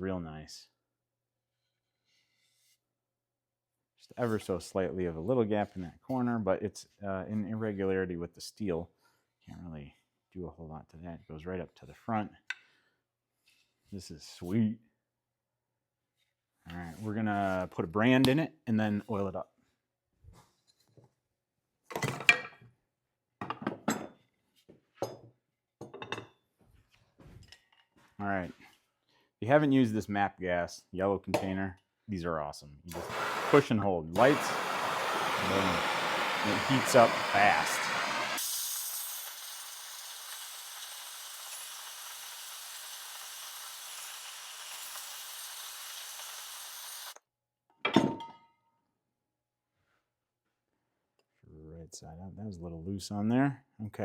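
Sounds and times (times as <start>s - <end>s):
gas torch hissing: 32.9s - 47.2s.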